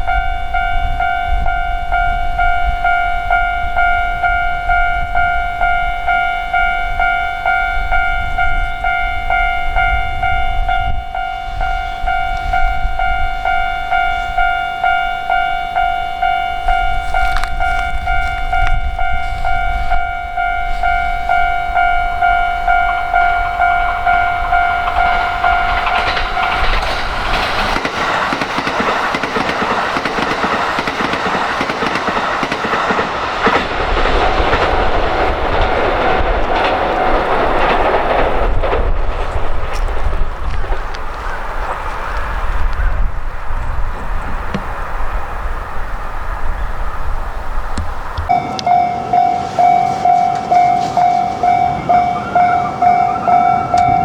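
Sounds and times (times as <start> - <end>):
level crossing alarm bell ringing: 0.0 - 32.8, 48.3 - 54.0
train passing with wheel clatter: 0.0 - 54.0.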